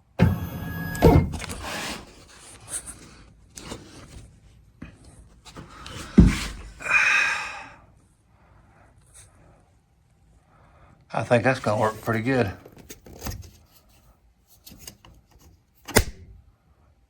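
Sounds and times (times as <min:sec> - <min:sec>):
knocks and clunks of parts: 0:00.2 - 0:01.7.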